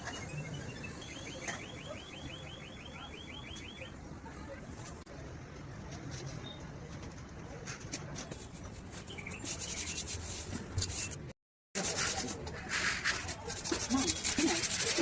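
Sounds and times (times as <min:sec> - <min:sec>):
hand rubbing and scratching: 0:07.6 - 0:15.0.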